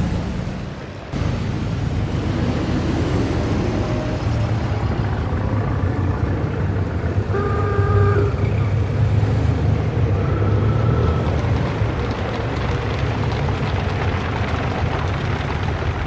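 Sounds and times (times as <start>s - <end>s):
rumble of motor cars: 0.0s - 16.0s
car horn: 7.2s - 8.8s.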